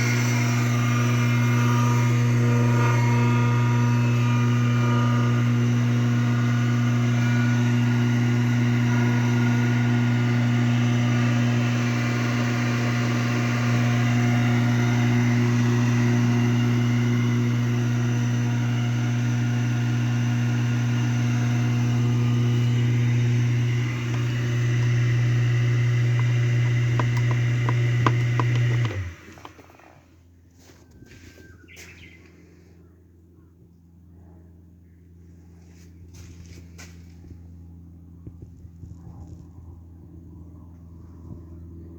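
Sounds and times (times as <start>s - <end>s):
pump motor humming: 0.0s - 31.9s.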